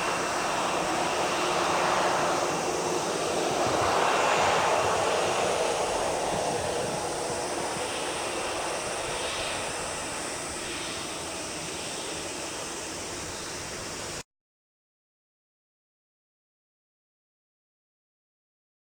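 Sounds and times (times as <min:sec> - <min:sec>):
jet engine roar: 0:00.0 - 0:14.2.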